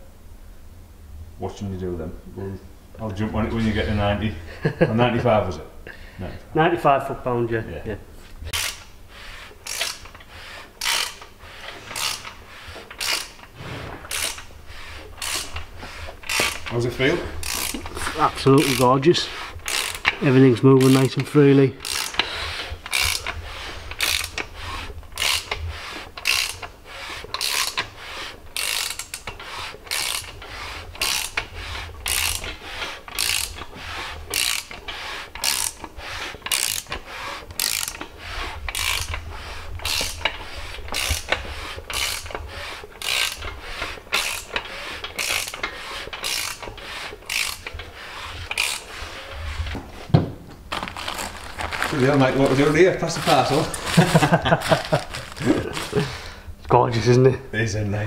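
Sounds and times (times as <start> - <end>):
socket ratchet clicking: 8.5 - 8.9, 9.6 - 10.2, 10.8 - 11.3, 12.0 - 13.5, 14.1 - 14.5, 15.2 - 16.7, 17.4 - 18.0, 19.6 - 20.2, 21.8 - 22.3, 22.9 - 24.5, 25.2 - 25.6, 26.2 - 26.7, 27.4 - 27.9, 28.5 - 30.4, 31.0 - 33.7, 34.3 - 34.8, 35.4 - 37.0, 37.6 - 38.1, 39.8 - 42.4, 43.0 - 47.8, 48.5 - 48.9.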